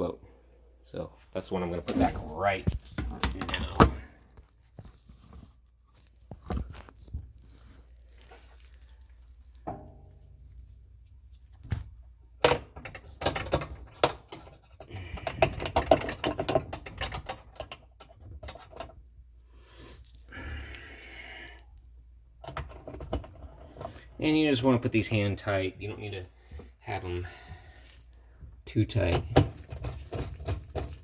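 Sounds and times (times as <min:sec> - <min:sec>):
plastic parts clicking and knocking: 0:12.4 - 0:19.0, 0:29.1 - 0:31.0
plastic scraping and rattling: 0:29.0 - 0:31.0.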